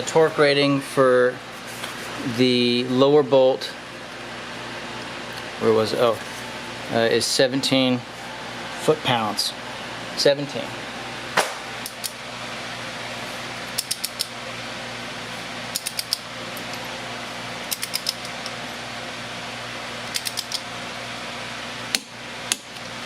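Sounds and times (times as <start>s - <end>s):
steady hum: 0.0s - 23.0s
ratchet wrench clicking: 13.8s - 14.3s, 15.8s - 16.2s, 17.7s - 18.3s, 20.1s - 20.6s.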